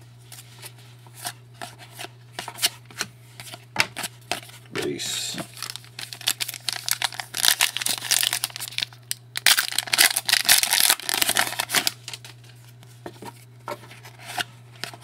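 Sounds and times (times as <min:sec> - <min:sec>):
wrapper crinkling and tearing: 0:05.4 - 0:12.3.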